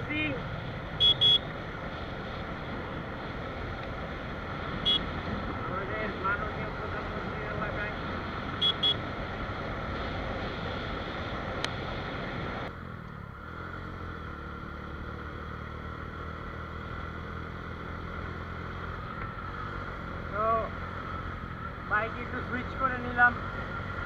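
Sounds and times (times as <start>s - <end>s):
steady engine hum: 0.0s - 24.0s
wind and road noise: 0.0s - 24.0s
motorcycle horn beeps: 1.0s - 1.5s, 4.8s - 5.1s, 8.6s - 9.0s.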